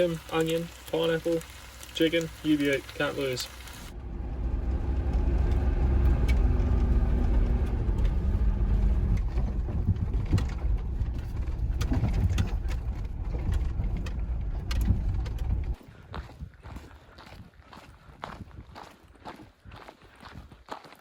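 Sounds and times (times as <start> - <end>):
low steady rumble: 0.0 - 15.8
droning tone: 3.0 - 15.8.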